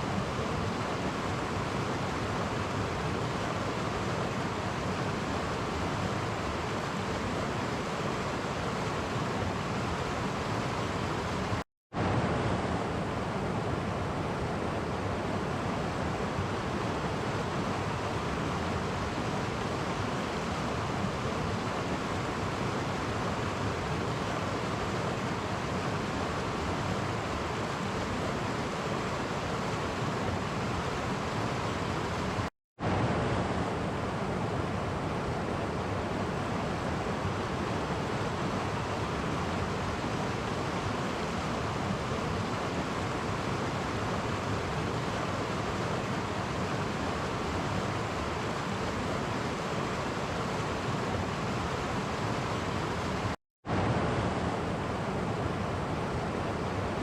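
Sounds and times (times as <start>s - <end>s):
stream rushing over cascades: 0.0s - 57.0s.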